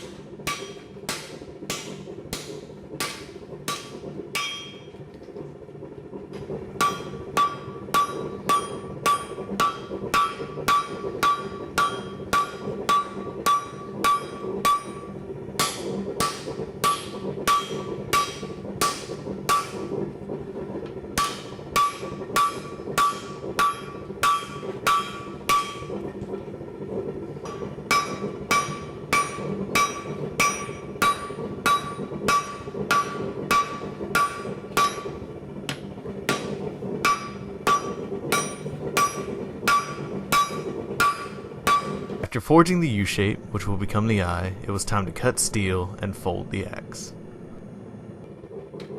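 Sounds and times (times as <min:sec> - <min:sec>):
steady low hum: 0:00.0 - 0:48.9
hammer ringing on anvil: 0:03.0 - 0:04.8, 0:06.8 - 0:15.0, 0:15.6 - 0:19.7, 0:21.2 - 0:25.9, 0:27.4 - 0:35.1, 0:36.3 - 0:42.1.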